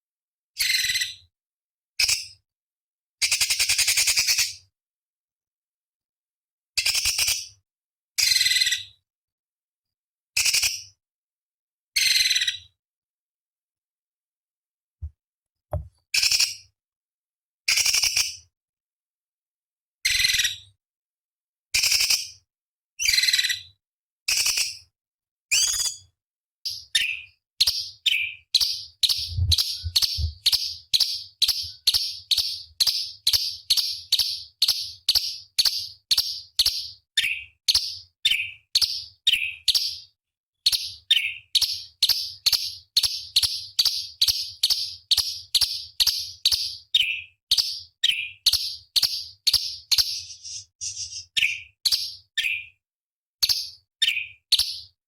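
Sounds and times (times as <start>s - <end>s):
bird singing sharp high notes: 28.6s - 32.5s, 50.0s - 51.6s.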